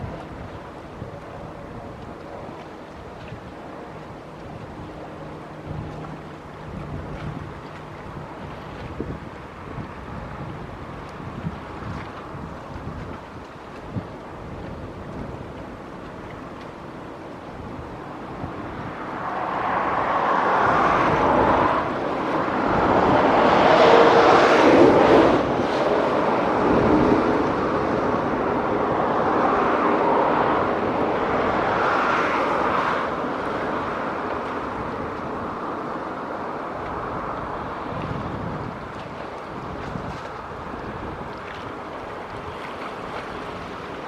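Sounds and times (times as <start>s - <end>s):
passing engine: 18.2s - 35.0s.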